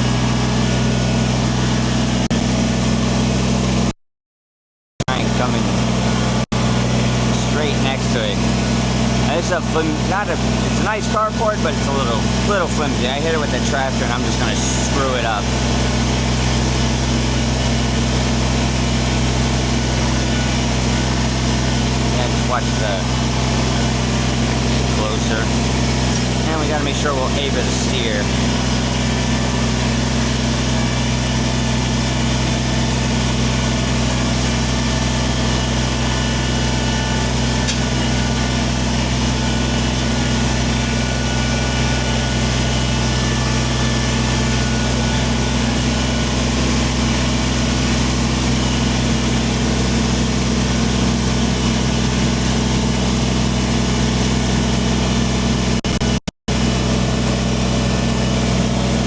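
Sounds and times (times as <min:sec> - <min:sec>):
tractor diesel engine running: 0:00.0 - 0:03.9, 0:05.0 - 0:59.0.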